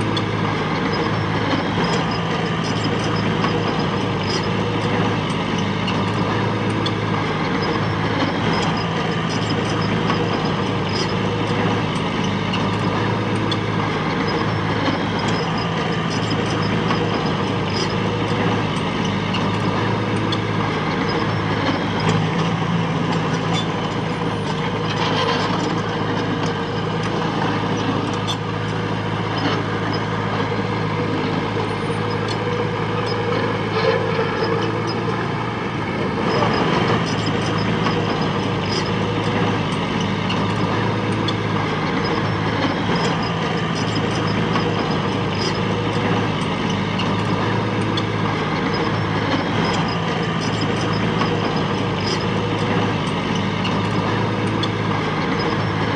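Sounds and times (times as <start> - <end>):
heavy machinery diesel engine: 0.0 - 55.9.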